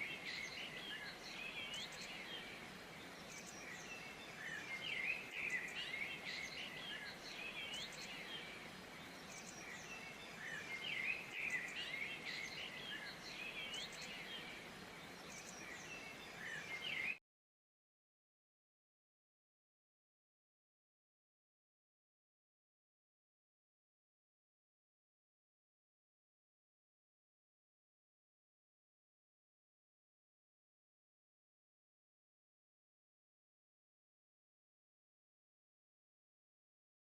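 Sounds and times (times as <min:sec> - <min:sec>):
faint steady hiss: 0:00.0 - 0:17.2
many birds chirping: 0:00.0 - 0:17.2.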